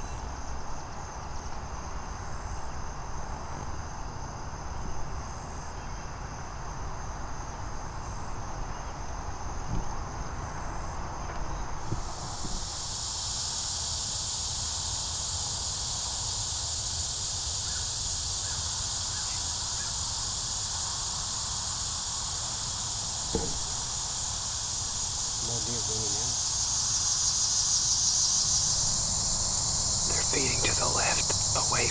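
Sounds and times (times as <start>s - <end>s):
insects chirring: 0.0s - 31.9s
wind rumble on microphone: 6.2s - 12.8s.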